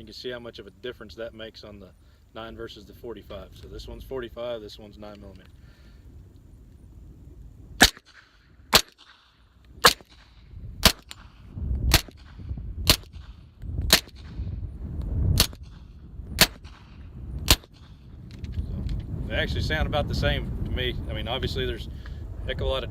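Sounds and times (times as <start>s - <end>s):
suppressed pistol shots: 7.8s - 14.5s, 15.4s - 18.0s.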